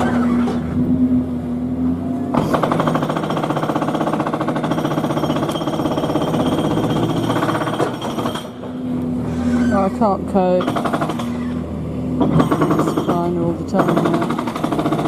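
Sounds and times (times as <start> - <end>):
jackhammer hammering: 2.3 - 9.0, 10.0 - 15.0.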